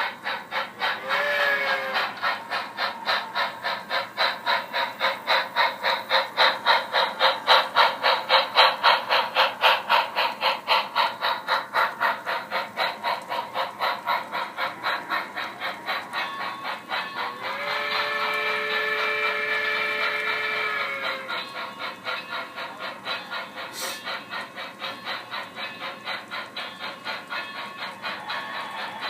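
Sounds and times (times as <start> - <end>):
model steam locomotive chuffing: 0.0 - 29.0
train whistle: 0.8 - 3.6, 14.7 - 29.0.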